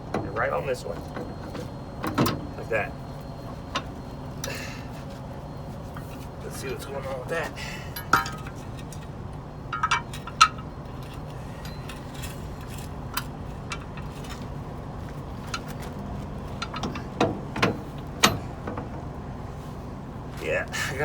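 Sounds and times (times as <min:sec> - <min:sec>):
steady low hum: 0:00.0 - 0:21.0
metal clinks and knocks: 0:07.9 - 0:19.0.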